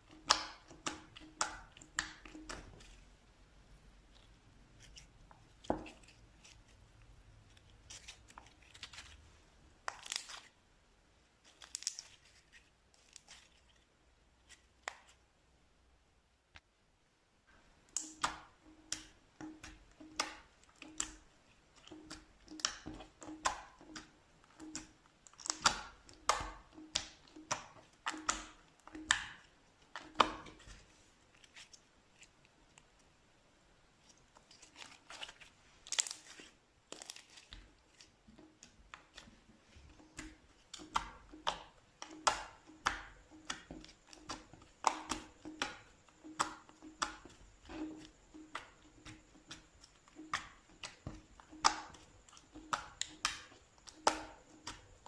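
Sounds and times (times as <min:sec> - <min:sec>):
slime sticky pops and crackles: 0:00.2 - 0:02.9, 0:21.8 - 0:30.6, 0:40.1 - 0:49.6.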